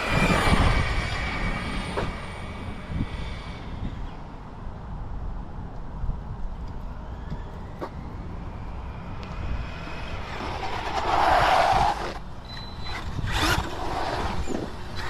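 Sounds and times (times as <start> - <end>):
steady low rumble: 0.0 - 12.4
vehicle driving past: 6.9 - 12.0.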